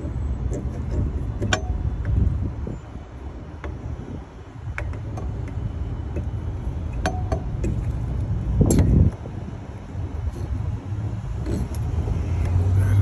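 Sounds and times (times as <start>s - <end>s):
low vehicle rumble: 0.0s - 13.0s.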